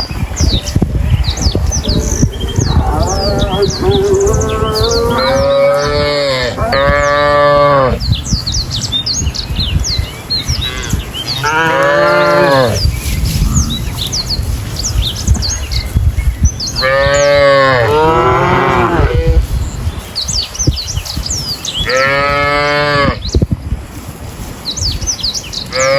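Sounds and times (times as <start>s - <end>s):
small birds chirping: 0.0s - 23.5s, 24.3s - 25.9s
cattle mooing: 1.9s - 8.0s, 10.7s - 12.8s, 16.8s - 19.4s.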